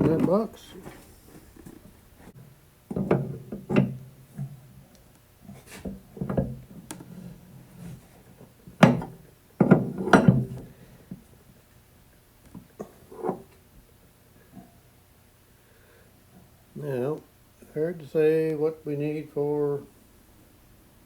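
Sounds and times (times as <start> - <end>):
tools knocking on workbench: 8.8 - 10.6.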